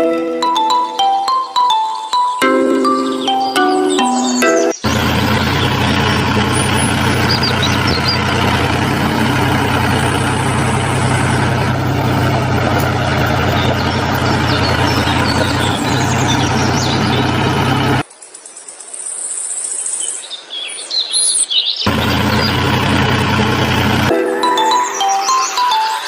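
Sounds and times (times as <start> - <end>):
engine idling: 4.8 - 18.0, 21.9 - 24.1.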